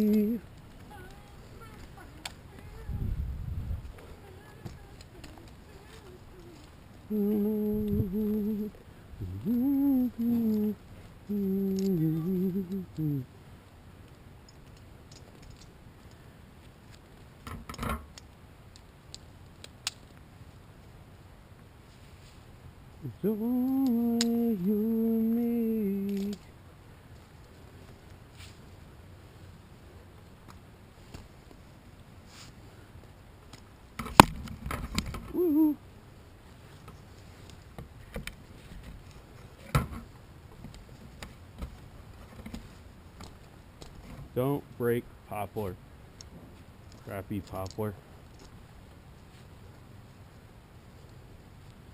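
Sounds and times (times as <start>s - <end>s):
man humming: 0.0s - 0.4s, 7.1s - 13.3s, 23.0s - 26.5s, 35.3s - 35.8s
small clicks and clinks: 14.4s - 16.2s.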